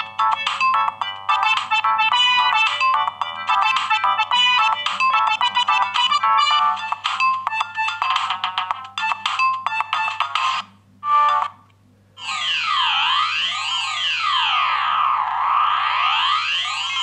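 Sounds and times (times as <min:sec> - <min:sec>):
siren-like ringtone: 0:00.0 - 0:08.2, 0:09.0 - 0:11.6, 0:12.2 - 0:17.0
mobile phone ringtone melody: 0:00.0 - 0:11.6.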